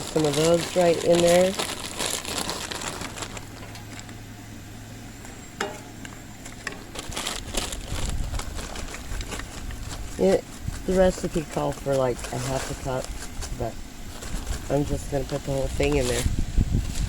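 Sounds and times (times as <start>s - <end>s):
clicks and knocks of pan and utensils: 5.6s - 6.0s.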